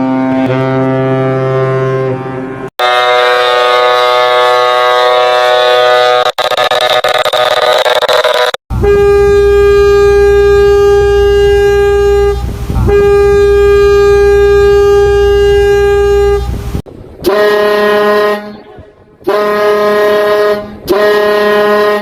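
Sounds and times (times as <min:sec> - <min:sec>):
ship's horn blasts: 0:00.0 - 0:06.4, 0:08.3 - 0:22.0
low steady rumble: 0:08.7 - 0:21.8.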